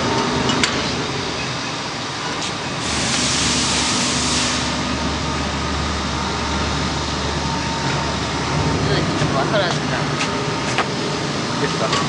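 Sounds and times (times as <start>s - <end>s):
loud hiss: 2.8s - 5.0s.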